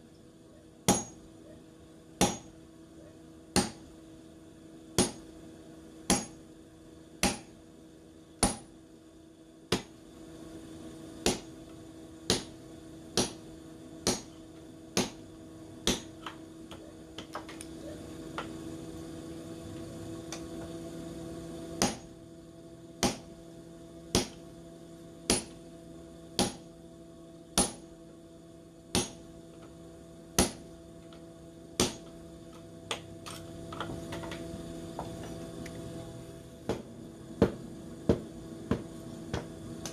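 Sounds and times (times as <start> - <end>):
steady electric hum: 0.0 - 39.9.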